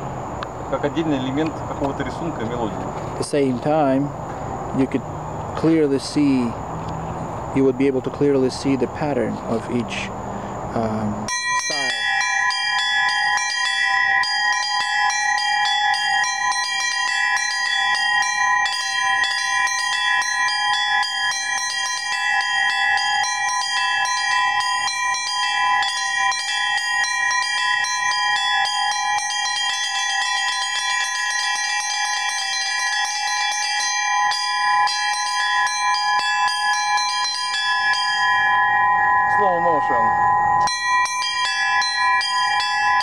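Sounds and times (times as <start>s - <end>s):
low bells ringing steadily: 0.0s - 43.0s
small bells rung rapidly: 10.8s - 43.0s.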